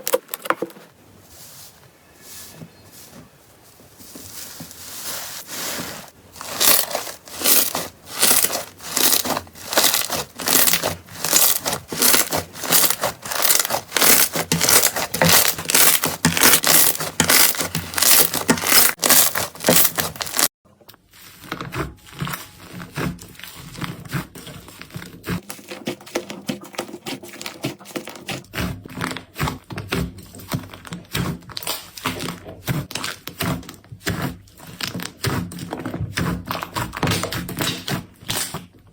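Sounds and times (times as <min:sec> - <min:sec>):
slime squished by hand crackling: 0:06.4 - 0:20.5.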